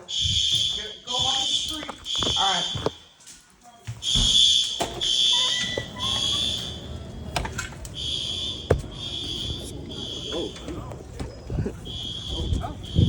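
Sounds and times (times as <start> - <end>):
fire alarm beeps: 0.0 - 3.4, 4.0 - 7.3, 7.9 - 13.0
sharp knocks: 8.6 - 9.0.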